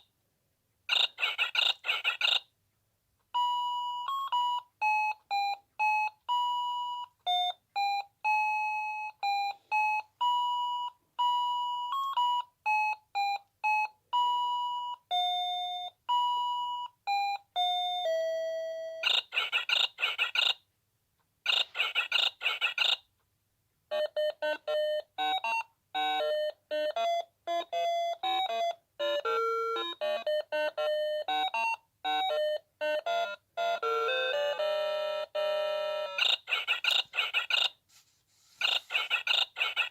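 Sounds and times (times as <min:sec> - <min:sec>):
alarm clock beeping melody: 0:03.4 - 0:19.9, 0:23.9 - 0:37.7.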